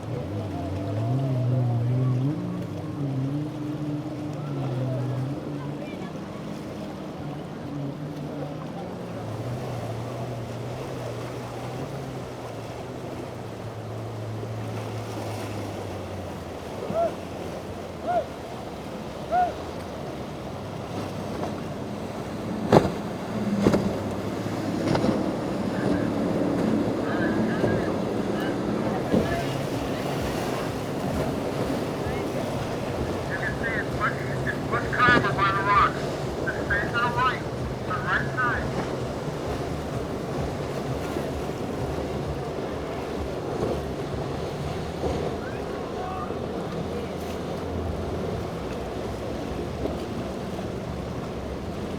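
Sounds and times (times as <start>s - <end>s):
choppy water: 0.0s - 51.9s
waves washing: 0.0s - 51.9s
wind on microphone: 22.5s - 44.2s
rising and falling calls: 32.0s - 38.8s.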